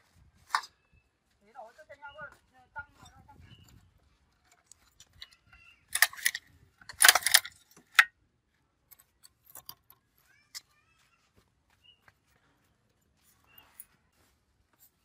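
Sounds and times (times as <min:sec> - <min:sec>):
small metal objects clinking: 0:04.7 - 0:08.1.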